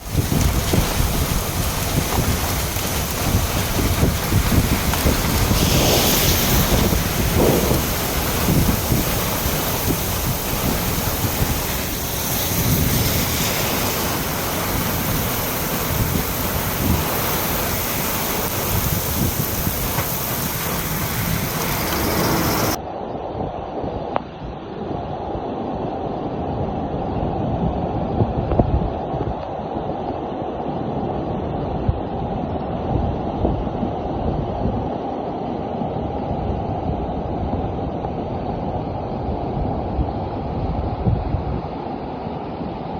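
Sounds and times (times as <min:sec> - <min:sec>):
heavy rain: 0:00.0 - 0:22.8
wind buffeting microphone: 0:00.0 - 0:22.8, 0:23.4 - 0:42.9.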